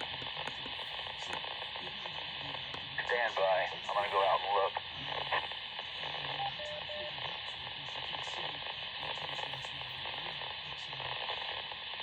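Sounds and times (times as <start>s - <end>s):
radio static hiss and hum: 0.0s - 12.0s.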